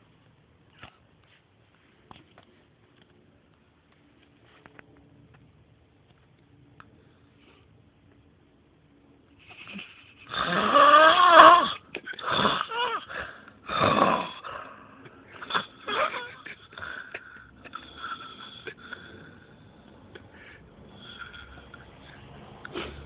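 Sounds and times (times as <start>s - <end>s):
man snoring heavily: 10.3s - 14.7s
wheezing breaths: 11.7s - 23.0s.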